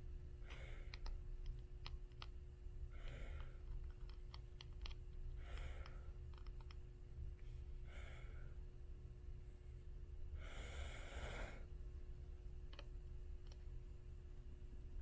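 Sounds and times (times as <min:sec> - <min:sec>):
breathy exhales: 0:00.4 - 0:01.1, 0:02.9 - 0:03.6, 0:05.4 - 0:06.2, 0:07.8 - 0:08.6, 0:10.4 - 0:11.7.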